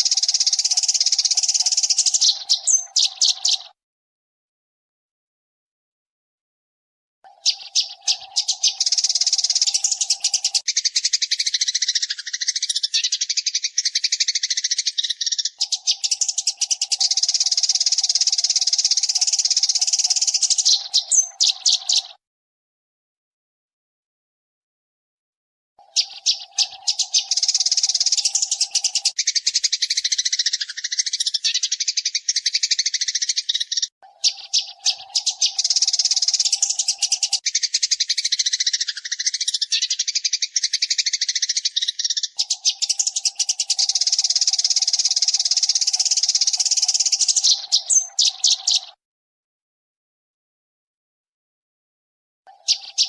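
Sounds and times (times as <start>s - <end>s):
sparrow chirping: 0.0s - 3.8s, 7.3s - 22.2s, 25.8s - 49.0s, 52.5s - 53.0s.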